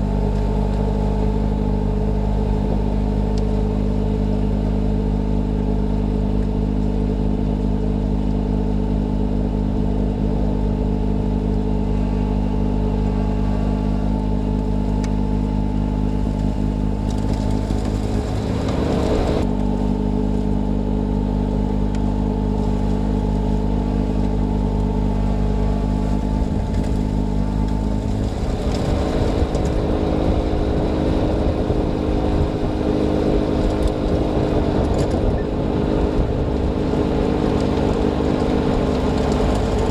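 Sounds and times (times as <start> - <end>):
tractor diesel engine running: 0.0 - 39.9
snow blower rushing: 11.8 - 39.9.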